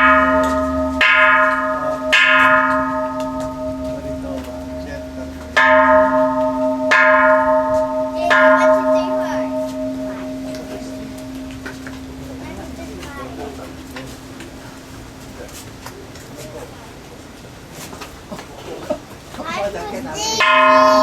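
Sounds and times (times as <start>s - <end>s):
temple bell ringing: 0.0s - 15.4s, 20.2s - 21.0s.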